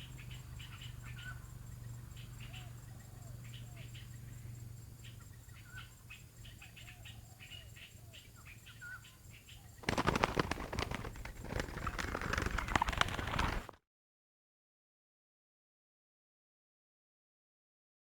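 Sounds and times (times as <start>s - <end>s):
small birds chirping: 0.0s - 13.7s
wings flapping: 9.8s - 13.8s.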